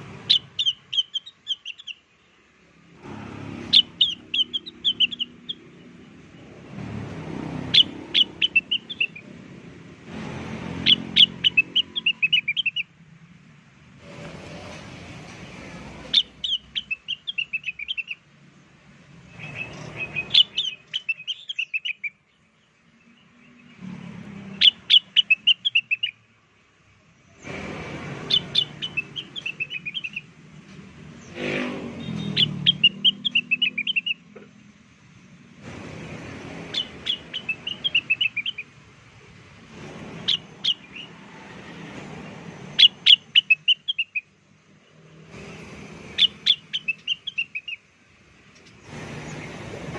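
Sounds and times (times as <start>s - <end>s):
bird chirping descending calls: 0.0s - 2.1s, 3.0s - 9.4s, 10.7s - 12.9s, 16.0s - 18.2s, 19.3s - 22.2s, 24.5s - 26.2s, 27.4s - 30.3s, 31.1s - 34.3s, 36.3s - 38.8s, 40.2s - 44.3s, 46.1s - 47.9s.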